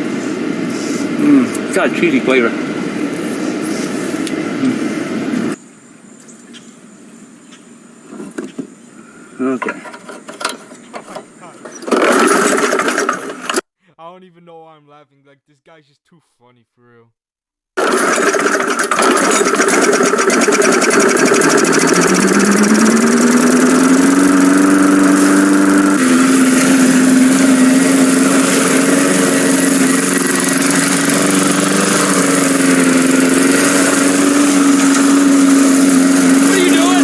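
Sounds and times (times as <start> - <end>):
lawn mower engine running: 0.0 - 5.6, 9.6 - 13.6, 17.8 - 37.0.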